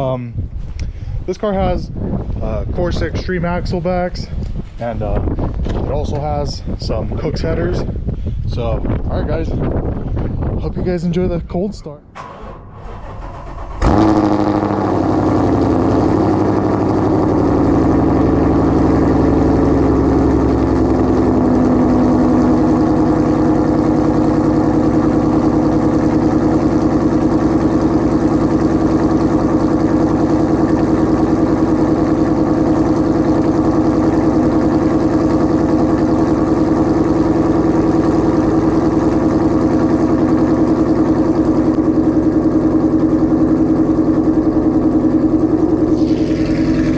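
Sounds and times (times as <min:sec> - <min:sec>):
car engine cold start and idle: 0:12.1 - 0:46.9.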